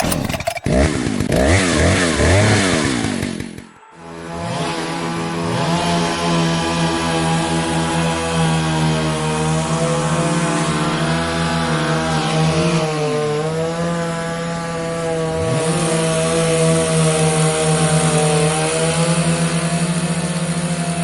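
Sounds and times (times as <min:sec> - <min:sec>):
buzzing drone with low pulse: 0:03.8 - 0:08.1.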